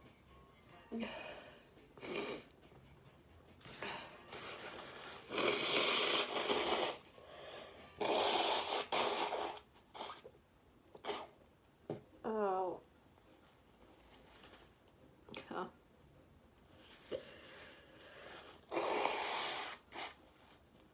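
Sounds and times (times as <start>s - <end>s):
wheezy breaths: 1.0s - 2.6s, 5.1s - 10.2s.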